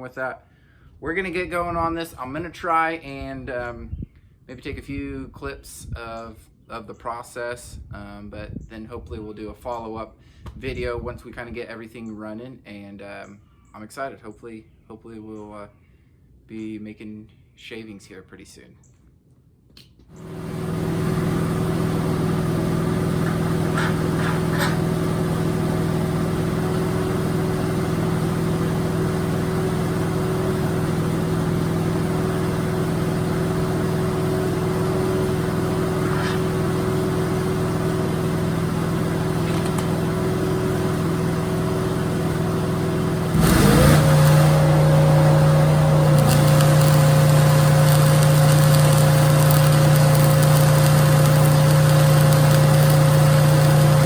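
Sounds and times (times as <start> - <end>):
planer machinery humming: 20.2 - 54.0
high machine whine: 43.3 - 54.0.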